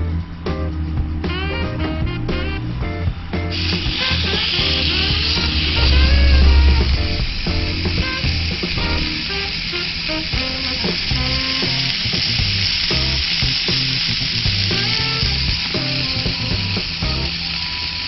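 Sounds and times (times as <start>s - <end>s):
background music: 0.0s - 17.6s
food sizzling on a grill plate: 3.5s - 18.0s.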